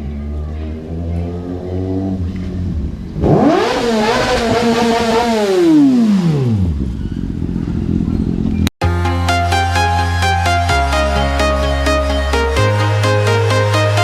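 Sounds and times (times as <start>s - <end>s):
motorcycle engine revving: 0.0s - 8.7s
electronic dance music: 8.8s - 14.0s.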